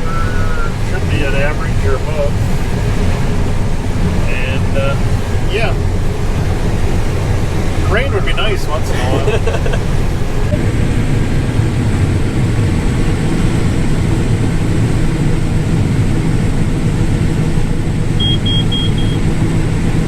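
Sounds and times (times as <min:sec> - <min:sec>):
combine harvester rumbling: 0:00.0 - 0:20.0
short high electronic beeps: 0:18.2 - 0:19.2.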